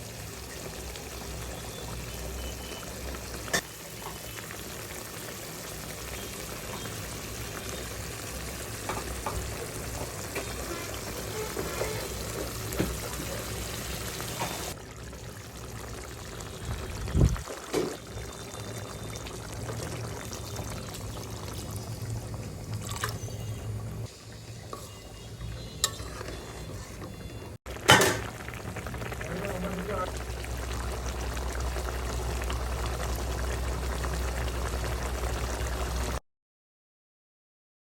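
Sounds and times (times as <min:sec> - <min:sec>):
fish curry sizzling in a pan: 0:00.0 - 0:36.2.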